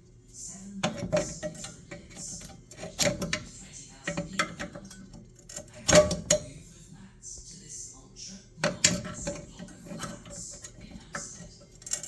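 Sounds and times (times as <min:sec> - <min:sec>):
tools clicking and knocking metal: 0:00.8 - 0:06.6, 0:08.6 - 0:12.0.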